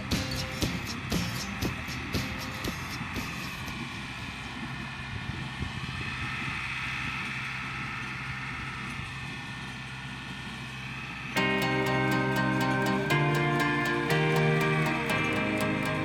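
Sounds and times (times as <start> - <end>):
guitar music: 0.0 - 3.6, 11.4 - 16.0.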